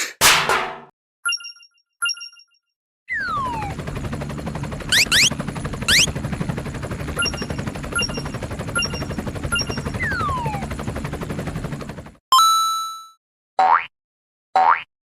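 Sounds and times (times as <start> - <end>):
cartoon rising zips: 3.1 - 3.8, 4.9 - 6.1.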